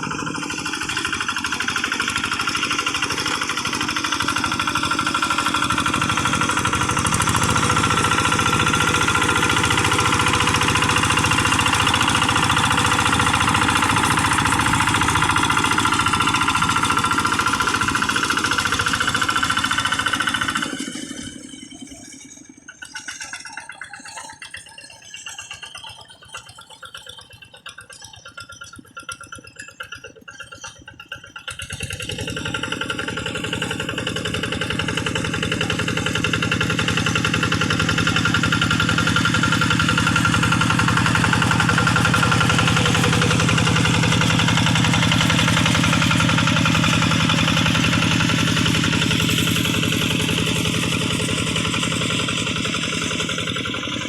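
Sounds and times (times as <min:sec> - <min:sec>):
diesel engine running: 0:00.0 - 0:23.2, 0:29.6 - 0:54.0.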